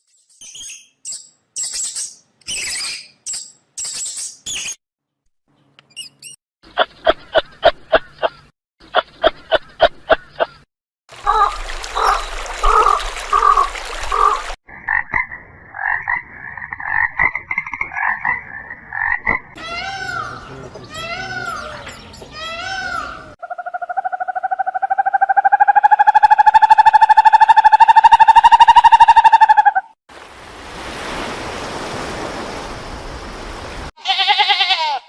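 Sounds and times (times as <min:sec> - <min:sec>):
rising and falling animal calls: 0:19.6 - 0:30.0.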